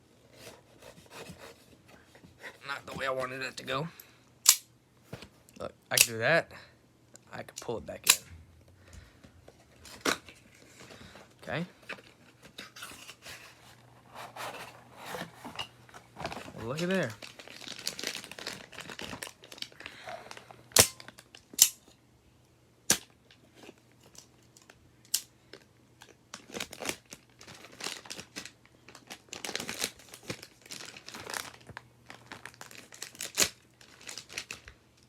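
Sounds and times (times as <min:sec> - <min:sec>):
sharp plastic snaps: 0:04.4 - 0:04.7, 0:20.8 - 0:21.8
plastic packaging crinkling: 0:09.8 - 0:21.6, 0:25.6 - 0:35.0.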